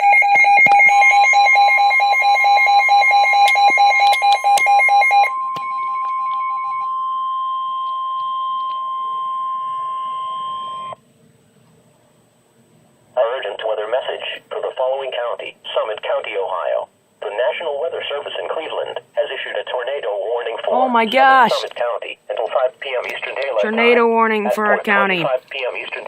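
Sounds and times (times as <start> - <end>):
rapid pulsing beeper alarm: 0.0 - 11.0
steady warning tone: 0.0 - 11.0.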